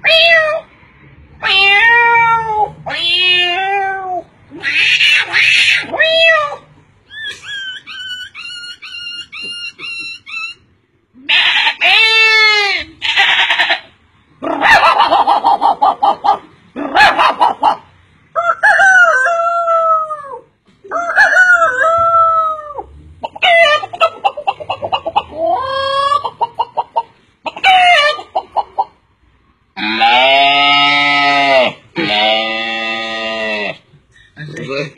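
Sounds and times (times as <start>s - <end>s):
man imitating rooster crowing: 18.4s - 22.8s.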